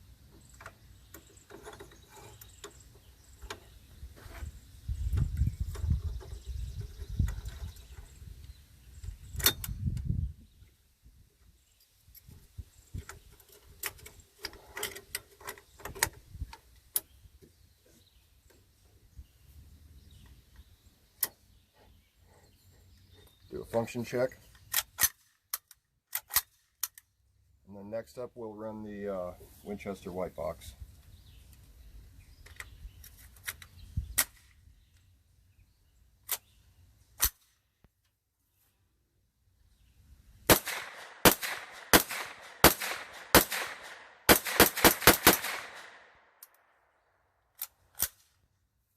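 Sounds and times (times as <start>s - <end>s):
metallic clicks of rifle handling: 24.5s - 27.1s, 47.5s - 48.4s
carbine gunshots: 40.5s - 46.2s.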